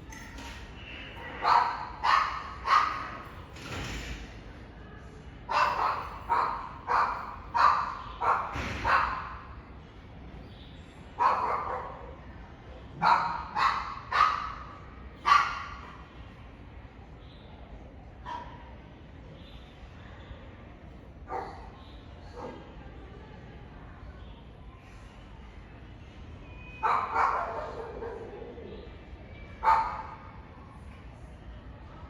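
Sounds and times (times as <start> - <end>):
dog barking: 1.2 - 3.3, 5.5 - 9.5, 11.2 - 12.2, 13.0 - 16.0, 21.3 - 22.7, 26.8 - 28.4, 29.6 - 30.3.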